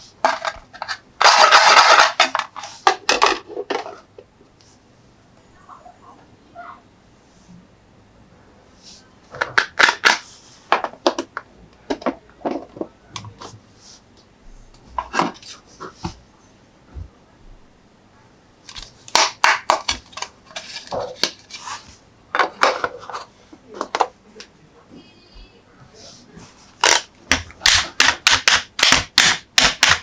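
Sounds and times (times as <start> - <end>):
toy trucks clicking and scratching: 0.2 - 4.1, 18.7 - 24.1, 26.8 - 30.0.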